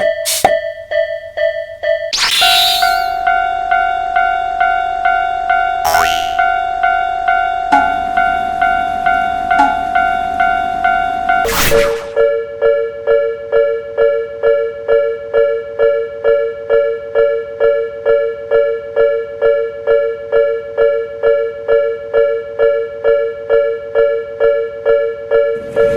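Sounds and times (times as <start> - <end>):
level-crossing warning bell: 3.2 - 5.8, 6.4 - 11.5.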